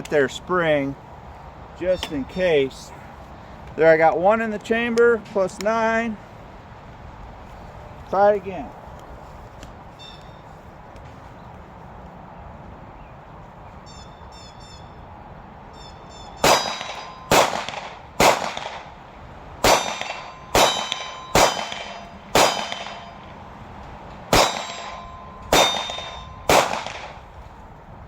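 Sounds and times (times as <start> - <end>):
pistol shots with metallic ring: 16.4 - 18.9, 19.6 - 23.4, 24.3 - 27.2.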